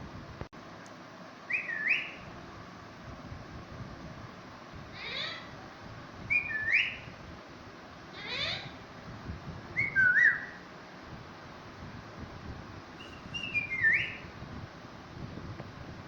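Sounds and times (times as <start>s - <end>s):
parrot whistling: 1.5s - 2.2s, 6.3s - 7.1s, 8.2s - 8.7s, 9.8s - 10.6s, 13.0s - 14.2s
parrot squawk: 5.0s - 5.5s, 8.2s - 8.8s.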